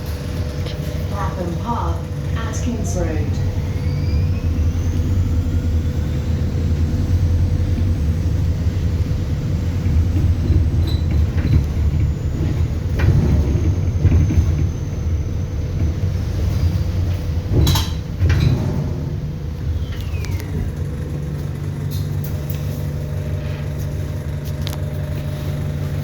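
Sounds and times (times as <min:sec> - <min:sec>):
bus body rattles: 0:00.0 - 0:26.0
bus drivetrain and road rumble: 0:00.0 - 0:26.0
high turbo whistle: 0:03.4 - 0:05.7.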